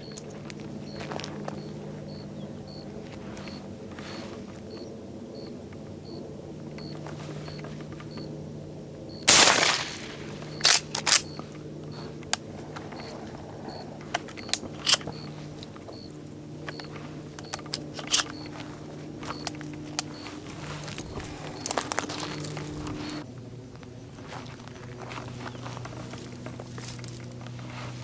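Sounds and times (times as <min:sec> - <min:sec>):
shotgun shot: 0:09.3 - 0:11.2.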